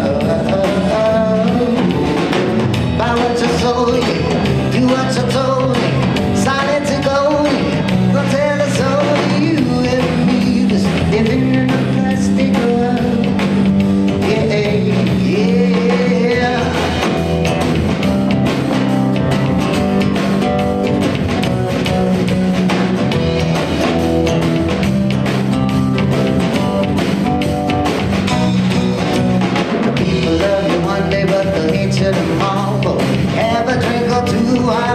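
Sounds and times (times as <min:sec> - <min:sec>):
person singing: 0:00.0 - 0:17.5, 0:29.9 - 0:34.9
bass guitar: 0:00.0 - 0:34.9
drum kit: 0:00.0 - 0:34.9
guitar: 0:00.0 - 0:34.9.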